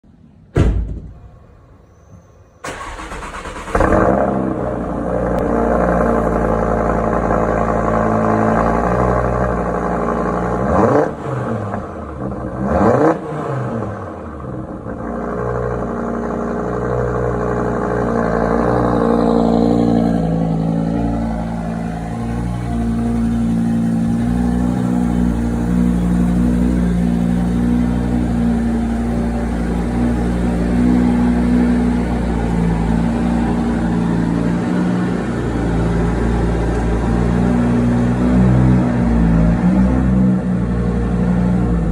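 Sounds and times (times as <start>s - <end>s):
thump: 0.5s - 2.2s
car engine starting and revving: 2.6s - 41.9s.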